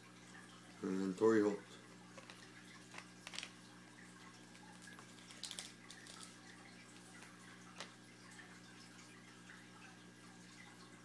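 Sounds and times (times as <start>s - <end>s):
trading cards being flipped: 2.2s - 3.6s, 4.8s - 6.4s.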